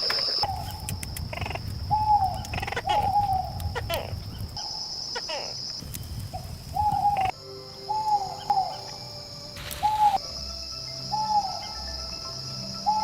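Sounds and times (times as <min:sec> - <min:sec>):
insect drone: 0:00.0 - 0:13.0.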